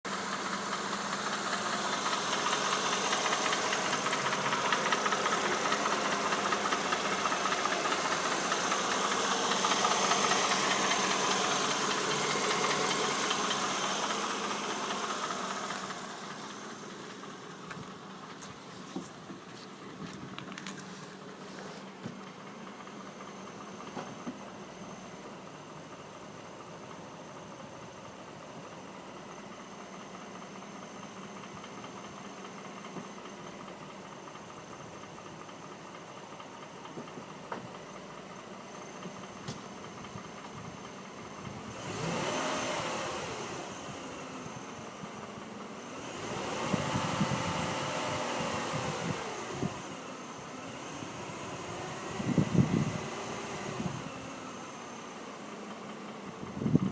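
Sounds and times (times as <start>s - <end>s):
car engine idling with knock: 0.1s - 56.9s
engine revving: 0.2s - 16.8s, 41.6s - 44.6s, 45.8s - 50.0s, 50.6s - 54.8s.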